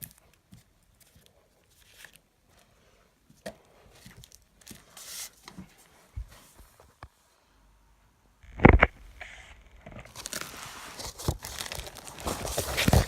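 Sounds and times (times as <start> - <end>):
packaging rustling: 9.8 - 13.0.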